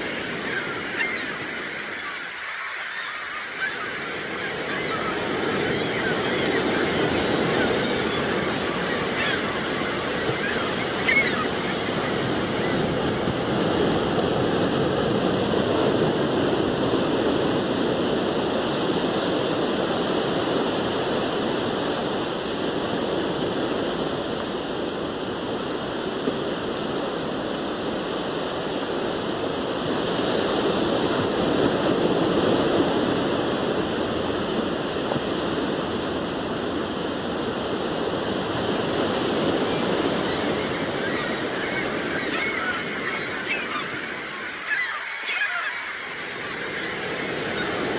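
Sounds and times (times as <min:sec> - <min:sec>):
seagull call: 0:00.0 - 0:14.8, 0:38.6 - 0:47.9.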